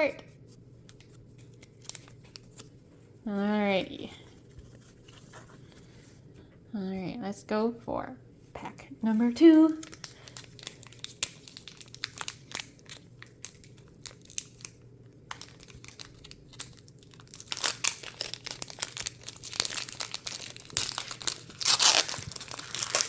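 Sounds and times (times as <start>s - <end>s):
foil wrapper crinkling: 0.8s - 2.8s, 9.7s - 23.0s.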